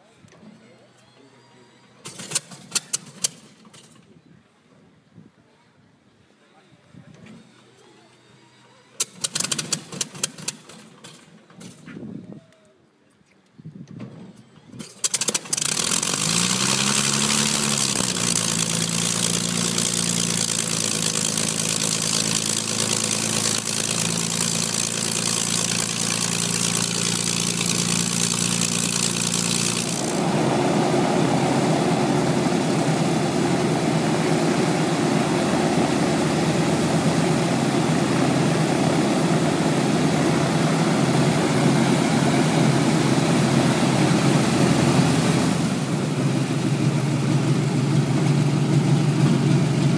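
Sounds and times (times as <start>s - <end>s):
piston aircraft engine idling: 9.0s - 11.4s, 14.8s - 49.9s.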